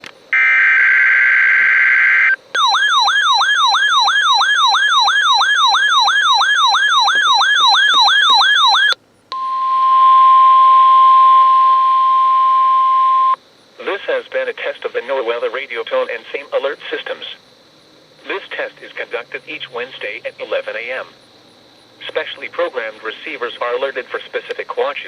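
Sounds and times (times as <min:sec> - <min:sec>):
sweeping electronic alarm: 0:00.3 - 0:13.4.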